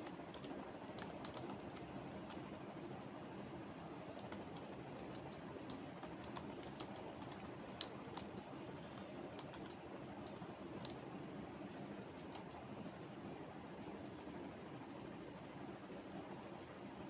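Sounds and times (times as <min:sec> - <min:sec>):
keyboard typing clicks: 0:00.0 - 0:02.5, 0:04.1 - 0:11.0, 0:12.2 - 0:12.7
low background noise: 0:00.0 - 0:17.0.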